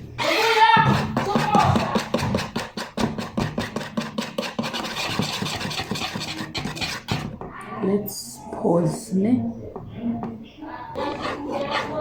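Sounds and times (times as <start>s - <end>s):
utensil stirring batter in bowl: 0.0s - 7.6s, 10.6s - 12.0s.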